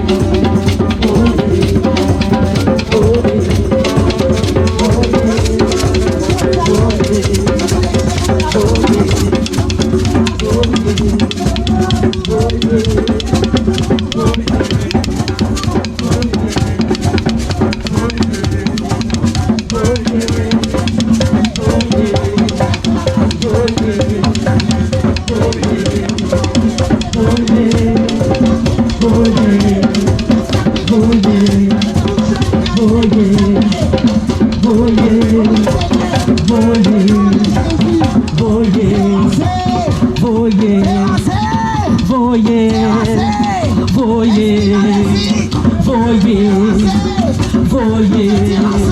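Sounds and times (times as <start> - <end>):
drum kit beat: 0.0 - 48.9
instrumental gospel music: 0.0 - 48.9.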